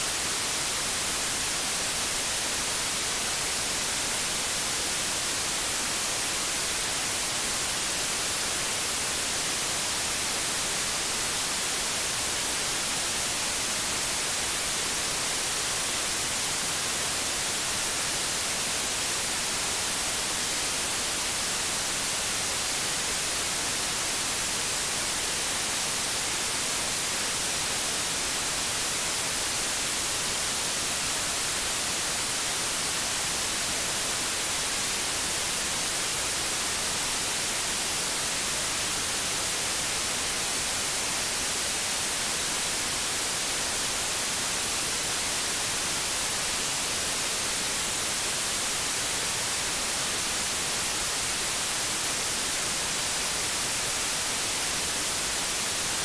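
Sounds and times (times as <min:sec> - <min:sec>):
white noise hiss: 0:00.0 - 0:56.0.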